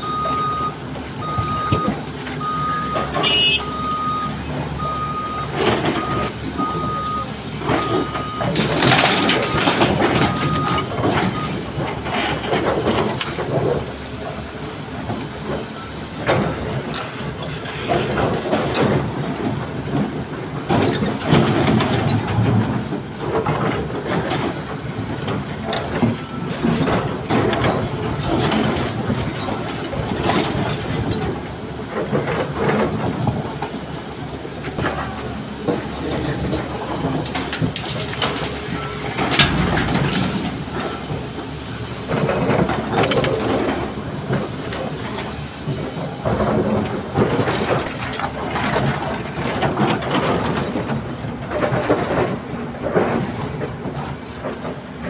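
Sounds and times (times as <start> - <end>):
reversing beeper: 0.0 - 12.2, 36.6 - 42.4
excavator engine under load: 0.0 - 55.0
material crashing into truck: 39.2 - 41.4.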